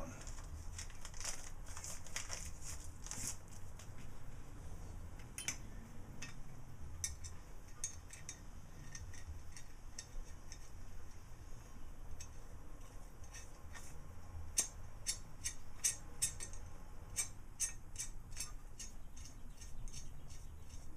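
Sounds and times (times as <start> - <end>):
metal hardware clicking and tapping: 5.2 - 6.4, 7.0 - 11.2, 14.5 - 19.3.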